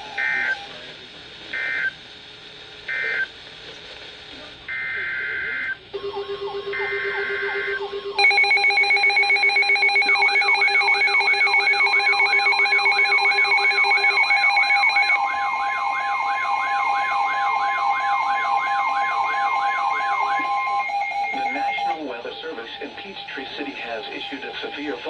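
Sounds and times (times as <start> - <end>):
steady electronic alarm tones: 6.0 - 25.0.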